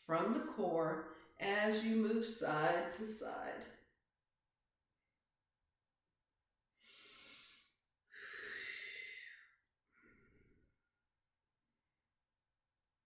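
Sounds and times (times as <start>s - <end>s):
person breathing deeply: 6.8s - 10.6s.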